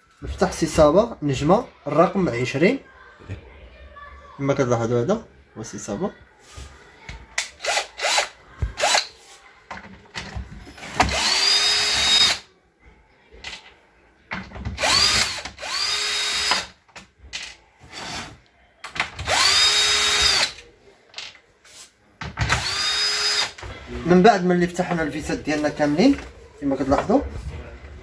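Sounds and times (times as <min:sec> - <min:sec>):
cordless screwdriver motor whirring: 0:07.6 - 0:09.1, 0:11.1 - 0:12.4, 0:14.8 - 0:16.7, 0:19.3 - 0:20.6, 0:22.5 - 0:23.6.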